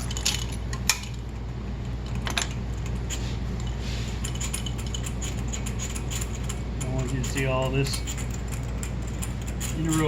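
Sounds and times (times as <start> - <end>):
steady low hum: 0.0 - 10.0
hand tools clicking and tapping: 4.2 - 10.0.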